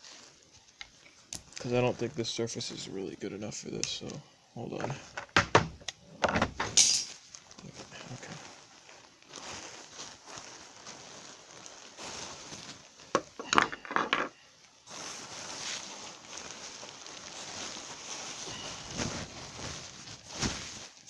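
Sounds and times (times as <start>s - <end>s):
steady low hiss: 0.0s - 21.0s
small hard objects clattering: 6.5s - 21.0s.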